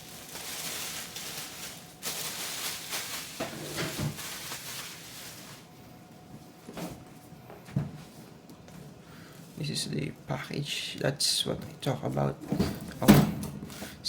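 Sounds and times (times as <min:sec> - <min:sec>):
cardboard rustling and scraping: 0:00.0 - 0:05.6.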